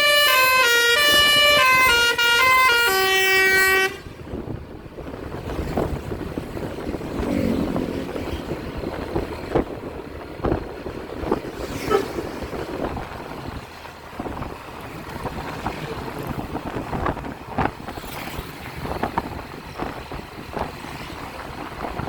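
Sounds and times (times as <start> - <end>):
road traffic noise: 0.0 - 22.0
wind buffeting microphone: 4.0 - 22.0.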